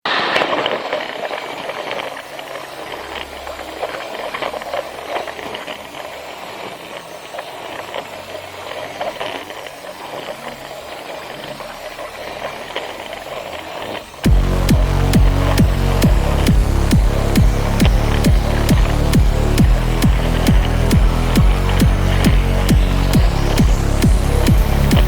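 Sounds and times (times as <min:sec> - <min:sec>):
toy train motor whirring: 0:00.5 - 0:14.3.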